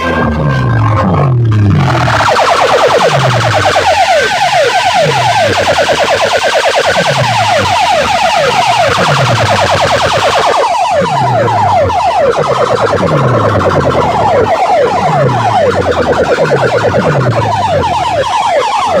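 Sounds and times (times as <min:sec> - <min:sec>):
deep falling bass sweep: 0:00.0 - 0:06.1, 0:11.0 - 0:18.4
electronic siren-like chirps: 0:01.5 - 0:19.0.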